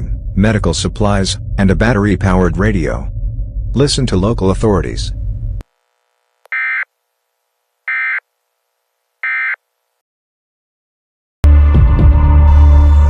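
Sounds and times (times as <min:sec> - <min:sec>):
loud low throbbing: 0:00.0 - 0:05.6
buzzy data chirps: 0:07.9 - 0:08.3, 0:09.2 - 0:09.6.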